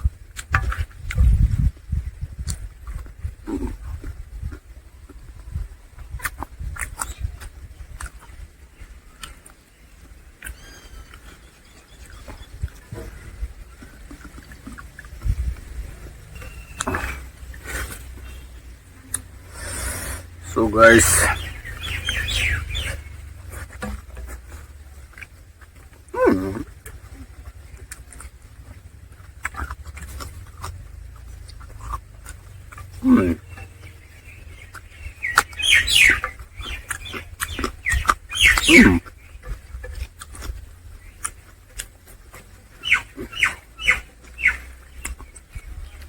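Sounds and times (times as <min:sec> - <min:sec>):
chewing and mouth clicks: 0:00.0 - 0:20.3, 0:21.3 - 0:46.0
faint chirp-like squeaks: 0:09.8 - 0:19.6.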